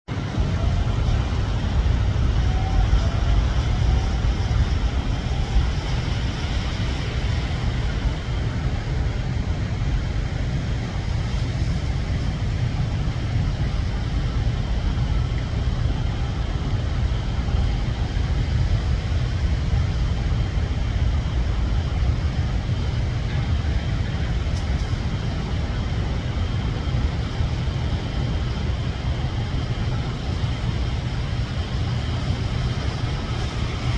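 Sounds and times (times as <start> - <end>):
jet engines roaring: 0.1 - 17.2
faint whine: 0.1 - 33.9.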